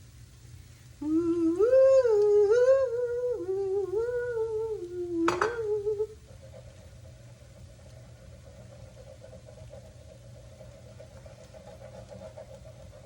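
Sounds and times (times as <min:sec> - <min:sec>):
woman humming: 0:01.0 - 0:06.2.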